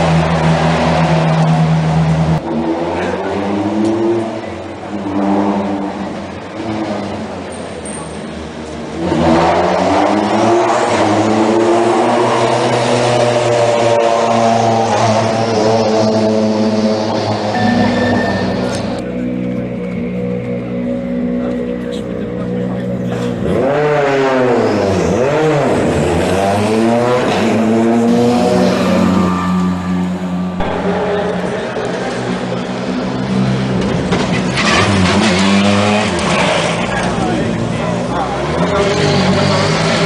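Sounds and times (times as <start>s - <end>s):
car engine running hard: 0.0s - 40.0s.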